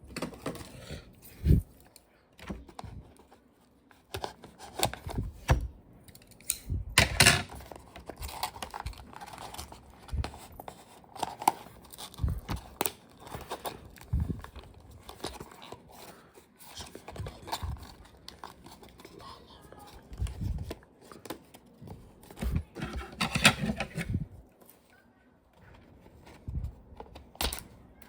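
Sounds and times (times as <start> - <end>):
packaging rustling and crinkling: 7.0 - 24.8.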